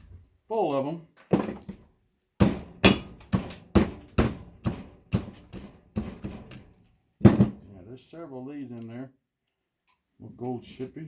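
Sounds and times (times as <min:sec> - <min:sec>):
hard knocks on circuit board: 0:02.4 - 0:06.6, 0:07.2 - 0:07.6.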